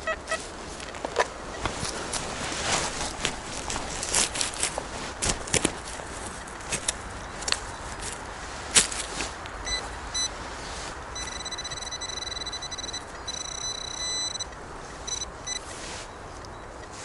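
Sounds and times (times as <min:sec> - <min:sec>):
steady background noise: 0:00.0 - 0:17.0
metal detector beeps: 0:09.6 - 0:10.4, 0:11.2 - 0:17.0
metal detector warbling tone: 0:11.2 - 0:15.6.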